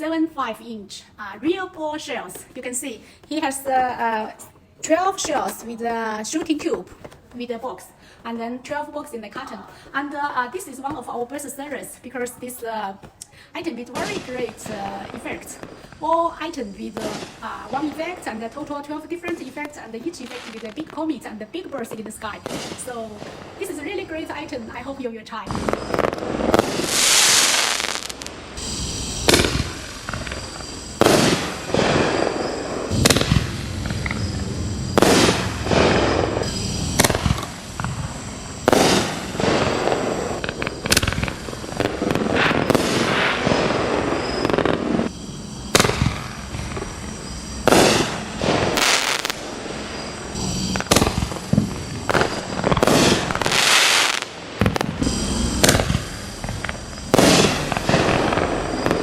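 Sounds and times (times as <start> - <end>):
fireworks launching and bursting: 13.8 - 21.1, 22.0 - 24.9, 25.5 - 59.0.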